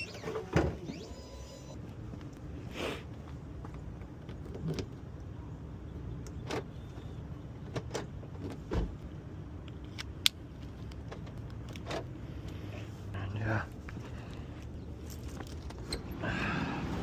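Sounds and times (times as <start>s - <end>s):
car keys clicking and jangling: 15.0s - 16.0s.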